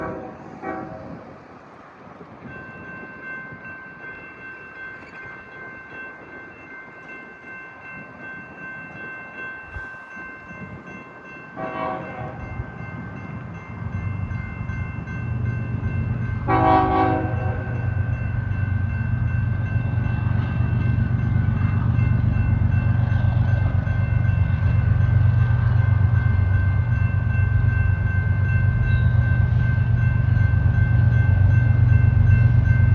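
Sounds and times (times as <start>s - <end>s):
locomotive horn blasts: 0.0s - 1.3s, 11.6s - 12.6s, 16.4s - 17.9s
diesel locomotives rumbling: 0.0s - 32.9s.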